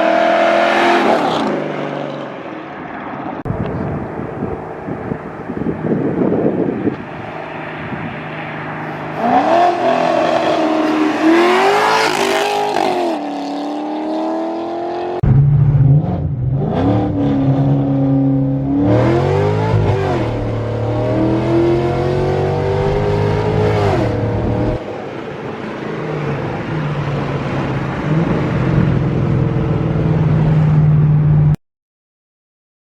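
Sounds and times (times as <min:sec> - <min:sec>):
car engine revving: 0:06.9 - 0:24.8.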